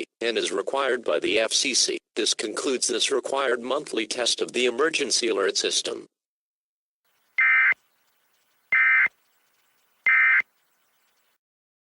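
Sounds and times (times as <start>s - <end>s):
digital data tone bursts: 7.4s - 11.4s.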